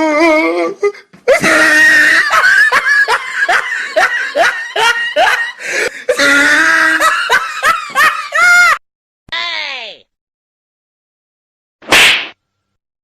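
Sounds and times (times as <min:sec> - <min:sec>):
person laughing loudly: 0:01.3 - 0:08.8.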